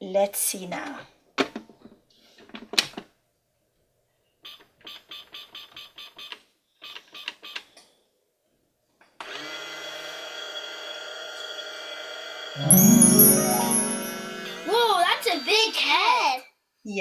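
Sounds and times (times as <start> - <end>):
electronic tune: 12.6 - 14.7.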